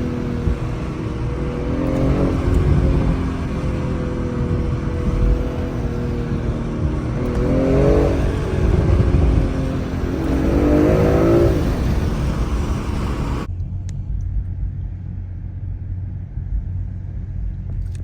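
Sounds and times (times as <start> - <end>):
car engine revving: 0.0 - 13.5
heavy road noise: 0.0 - 13.5
steady low rumble: 0.0 - 18.0.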